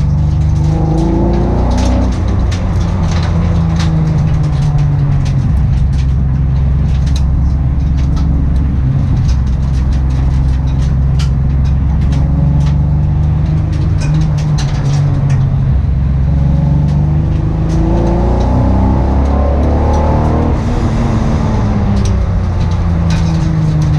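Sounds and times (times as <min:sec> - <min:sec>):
car engine misfiring: 0:00.0 - 0:23.9.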